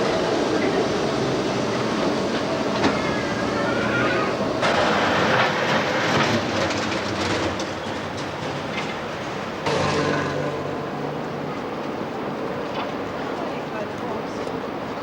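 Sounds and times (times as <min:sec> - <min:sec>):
tram wheels clattering on rails: 0:00.0 - 0:15.0
faint squeal: 0:02.8 - 0:04.4.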